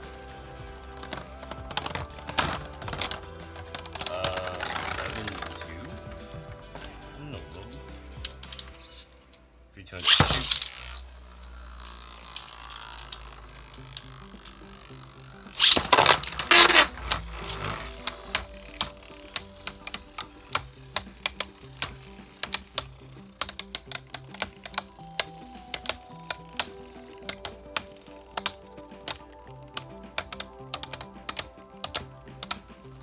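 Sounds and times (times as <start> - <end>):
background music: 0.0 - 33.0
spinning tops grinding: 0.0 - 33.0
plastic tops clacking: 0.9 - 7.0, 10.0 - 11.1, 12.2 - 33.0.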